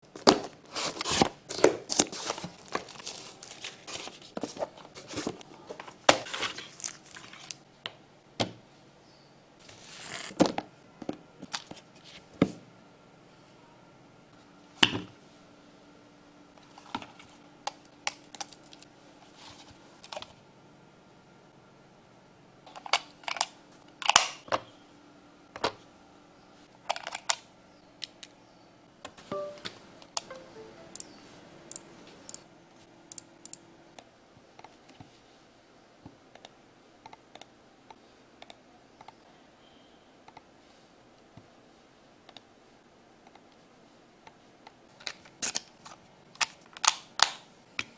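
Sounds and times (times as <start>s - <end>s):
packaging rustling and tearing: 0.2s - 7.6s.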